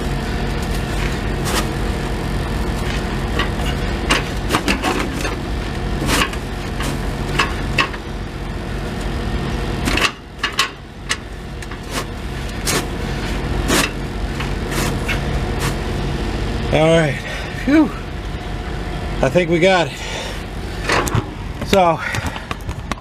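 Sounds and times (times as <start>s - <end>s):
diesel engine idling: 0.0s - 22.8s
metal knocks and clanks: 20.8s - 23.0s.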